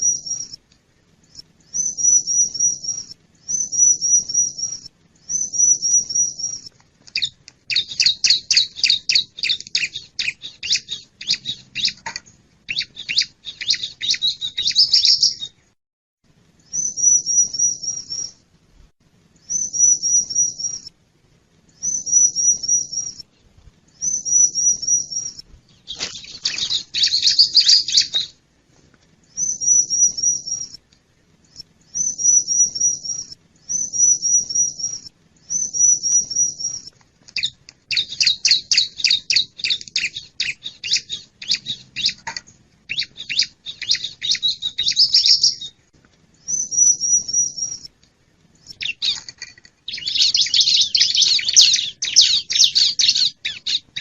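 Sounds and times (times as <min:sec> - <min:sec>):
bird trilled calls: 0:01.7 - 0:12.0, 0:12.7 - 0:15.6, 0:24.0 - 0:28.3, 0:32.0 - 0:42.2, 0:42.9 - 0:45.7, 0:49.9 - 0:54.0.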